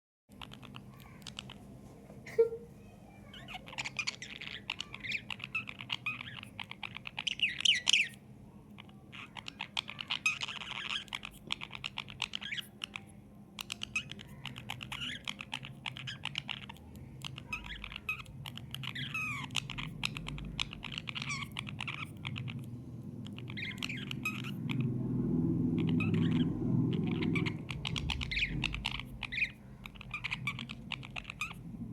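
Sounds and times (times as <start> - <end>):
budgerigar warbling and chattering: 0.3 - 1.7, 3.2 - 31.9
low rumble: 19.0 - 31.9.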